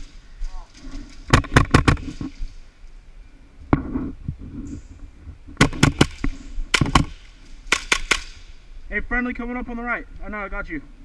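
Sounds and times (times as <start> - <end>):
airsoft guns firing: 5.6 - 8.5.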